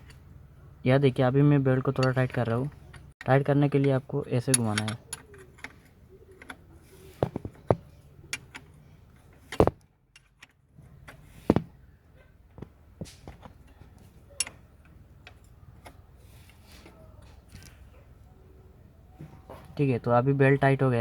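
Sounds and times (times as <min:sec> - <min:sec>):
wrench clicking on metal bolt: 0:14.4 - 0:16.0.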